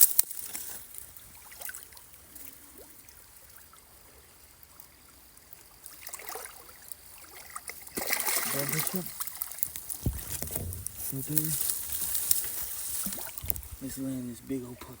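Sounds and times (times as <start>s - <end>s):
faint river water trickling: 0.0s - 15.0s
small ticks: 4.6s - 7.8s, 9.0s - 11.0s, 11.6s - 13.8s.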